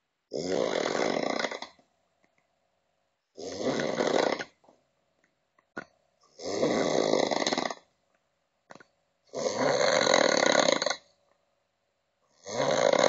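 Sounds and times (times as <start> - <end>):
person snoring heavily: 0.3 - 1.8, 3.4 - 4.6, 6.3 - 7.9, 9.3 - 11.1, 12.4 - 13.0.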